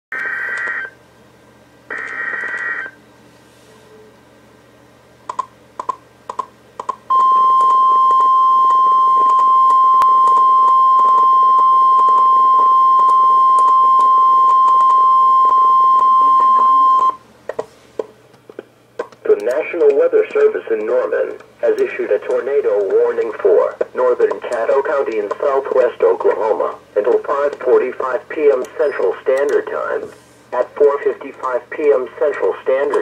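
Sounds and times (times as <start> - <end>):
steady warning alarm tone: 1.9 - 3.0, 7.1 - 17.2
short beeps: 7.1 - 17.2
announcement over radio: 19.2 - 33.0.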